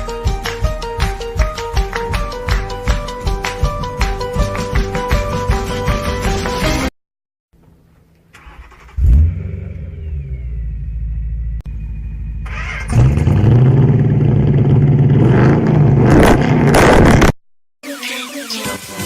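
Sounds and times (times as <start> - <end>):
car engine running: 9.0 - 17.2.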